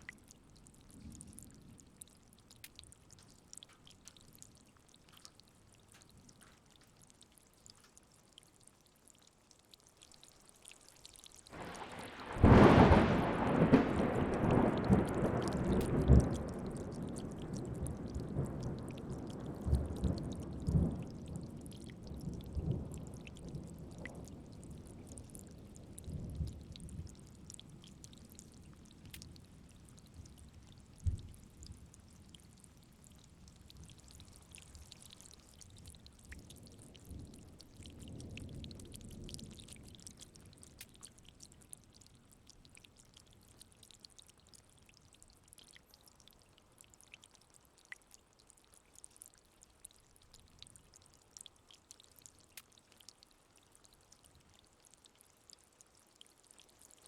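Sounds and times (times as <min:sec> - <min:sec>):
rain pattering: 0:00.0 - 0:57.0
thunder rumbling: 0:11.6 - 0:21.5.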